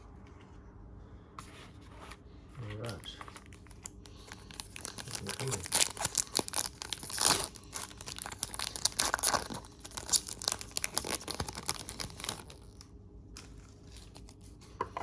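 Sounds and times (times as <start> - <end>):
wrapper tearing and crinkling: 3.2 - 14.5.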